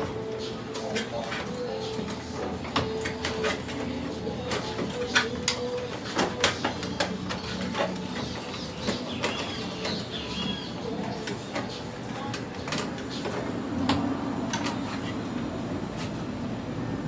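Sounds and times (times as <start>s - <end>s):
clicks and knocks of plastic parts: 0.9s - 10.2s.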